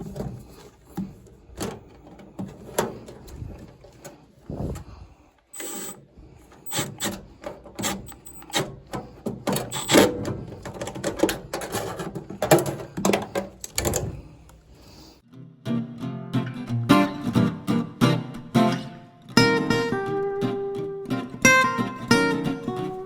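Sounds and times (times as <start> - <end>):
metal parts clicking and scraping: 5.4 - 14.1
acoustic guitar music: 15.3 - 23.0.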